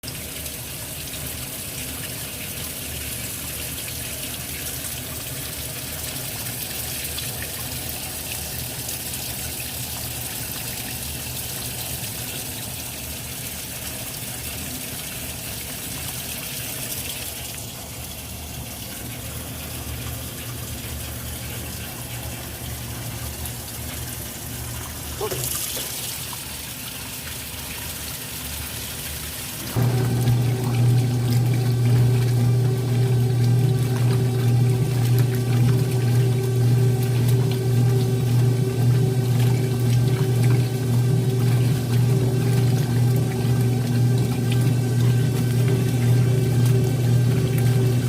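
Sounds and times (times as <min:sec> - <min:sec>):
water gushing into washing machine: 0:00.0 - 0:48.0
low steady hum: 0:29.7 - 0:48.0.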